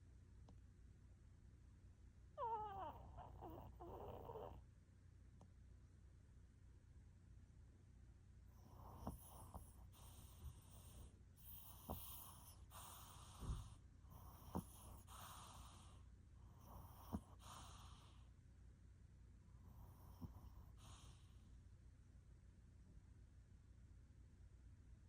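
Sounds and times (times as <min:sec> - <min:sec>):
dog snoring: 0:02.4 - 0:04.6, 0:08.5 - 0:18.3, 0:19.6 - 0:21.4.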